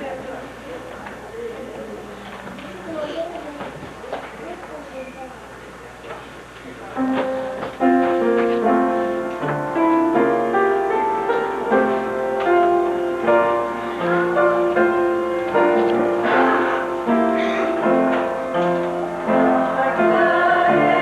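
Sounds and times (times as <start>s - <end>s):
piano music: 7.0s - 21.0s.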